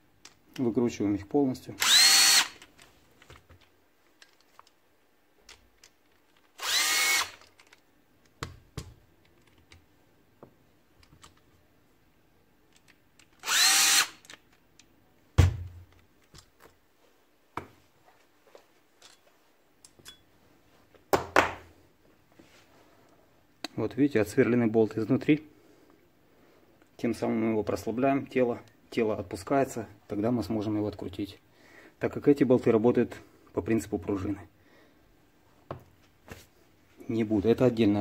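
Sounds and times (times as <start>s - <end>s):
cordless drill spinning: 1.8s - 2.6s, 6.5s - 7.5s, 13.4s - 14.3s.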